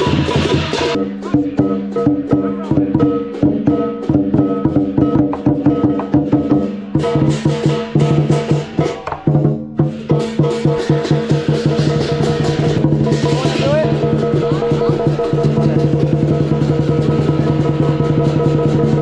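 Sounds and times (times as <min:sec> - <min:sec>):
cymbals ringing: 0:00.0 - 0:19.0
drum beaten fast: 0:00.0 - 0:19.0.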